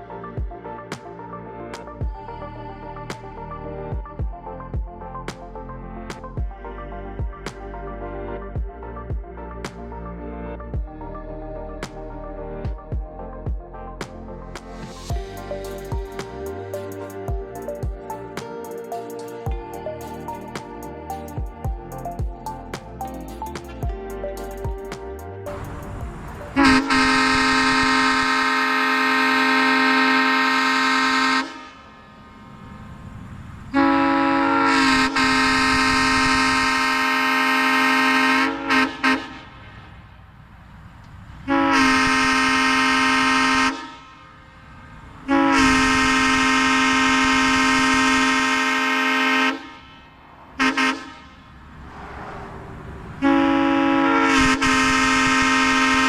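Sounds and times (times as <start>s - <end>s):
locomotive air horn blasts: 25.5s - 31.8s, 33.8s - 39.5s, 41.5s - 44.2s, 45.3s - 49.8s, 50.6s - 51.4s, 53.2s - 56.0s.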